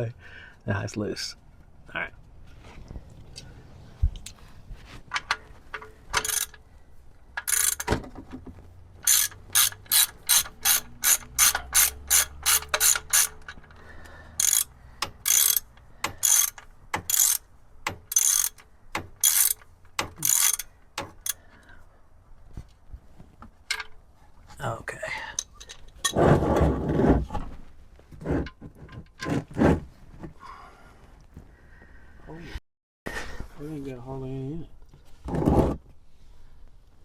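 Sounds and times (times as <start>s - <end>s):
socket ratchet clicking: 5.2s - 6.6s, 7.4s - 7.9s, 9.0s - 13.7s, 14.4s - 21.4s.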